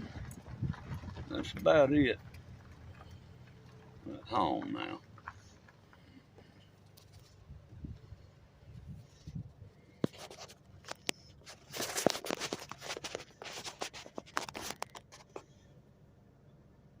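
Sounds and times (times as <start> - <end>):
handling noise on microphone: 8.7 - 15.6.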